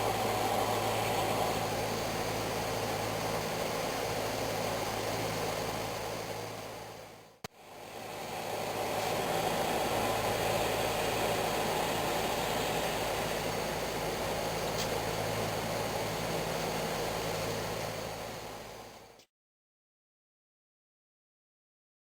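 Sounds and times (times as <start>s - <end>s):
machine humming: 0.0s - 6.9s.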